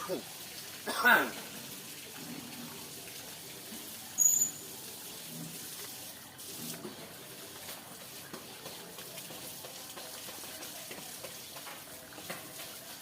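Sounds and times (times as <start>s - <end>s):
myna bird high whistle: 4.2s - 4.6s.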